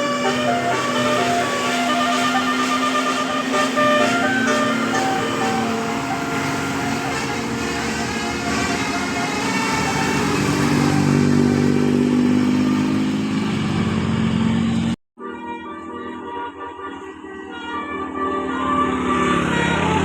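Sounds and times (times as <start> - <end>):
musical horn: 0.0 - 13.2, 15.2 - 20.0
bus engine revving: 0.0 - 15.0.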